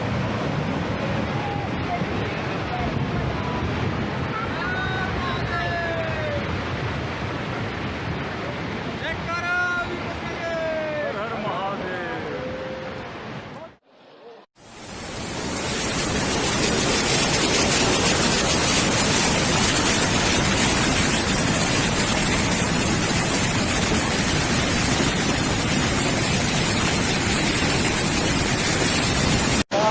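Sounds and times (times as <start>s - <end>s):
rushing floodwater roar: 0.0s - 13.7s, 14.6s - 29.9s.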